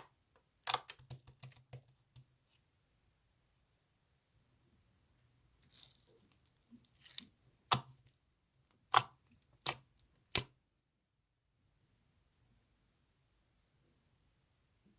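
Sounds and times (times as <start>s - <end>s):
slime squishing and crackling: 5.6s - 8.0s.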